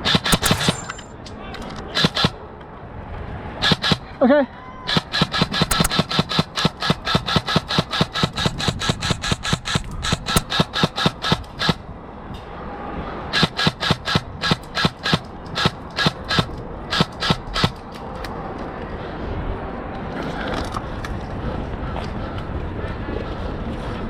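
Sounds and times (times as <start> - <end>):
airsoft gun rapid shots: 0.0 - 1.1, 1.9 - 2.4, 3.6 - 4.1, 4.9 - 11.8, 13.4 - 17.8.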